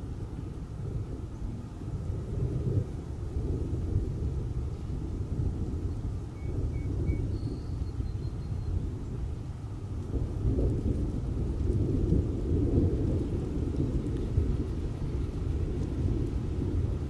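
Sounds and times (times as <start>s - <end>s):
low rolling thunder: 10.1s - 17.0s.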